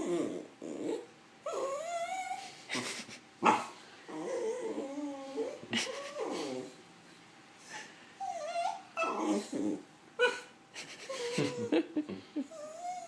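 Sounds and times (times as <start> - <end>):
dog whining and grumbling: 0.0 - 6.8, 7.6 - 11.8, 12.4 - 13.0
dog yipping: 8.4 - 9.5, 10.2 - 10.5.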